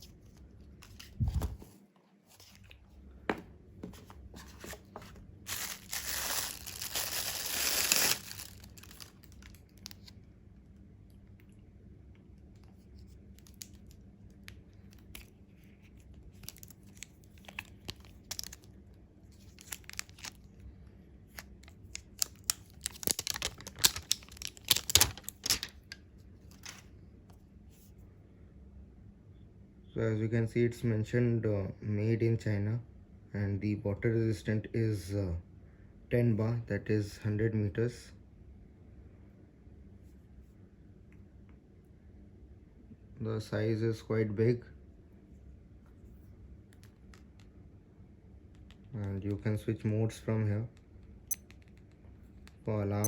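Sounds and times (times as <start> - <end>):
packaging rustling: 3.8 - 10.1, 16.2 - 18.7, 19.4 - 20.5, 21.4 - 26.8
packaging tearing: 5.5 - 10.1, 16.4 - 18.7, 19.4 - 20.5, 21.6 - 26.8
sharp crinkling: 5.5 - 10.1, 21.9 - 25.9.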